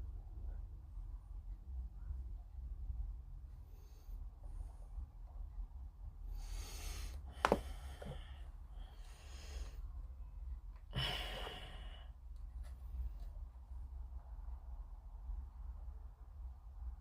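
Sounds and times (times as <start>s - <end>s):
person sighing: 10.9s - 12.1s.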